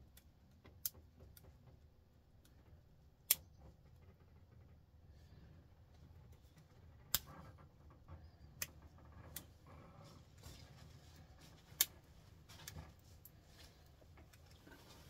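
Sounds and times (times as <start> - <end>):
soft handling rustle: 5.2 - 15.0.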